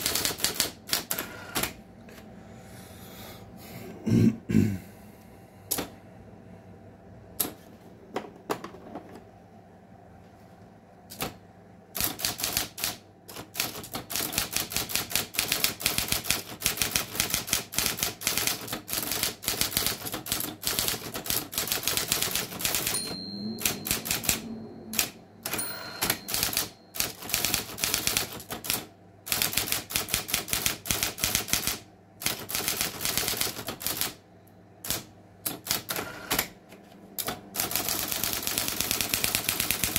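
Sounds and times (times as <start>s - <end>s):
typewriter keystroke clacks: 0.0s - 1.8s, 12.0s - 23.0s, 23.6s - 34.2s, 34.9s - 36.5s, 37.2s - 39.9s
typewriter motor hum: 0.0s - 1.8s, 12.0s - 34.2s, 34.8s - 36.6s, 37.2s - 39.9s.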